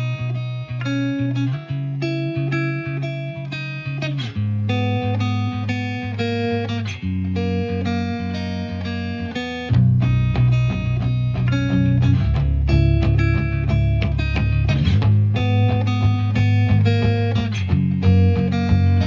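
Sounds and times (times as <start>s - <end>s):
plucked guitar notes: 0.0s - 19.0s
bass line: 9.7s - 19.0s.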